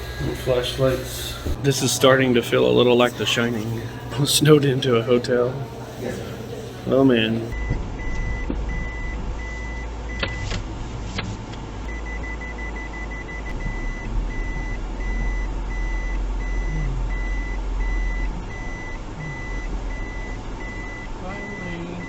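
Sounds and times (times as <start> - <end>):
low engine rumble: 0.0 - 22.0
reversing beeper: 7.4 - 10.4, 11.9 - 22.0.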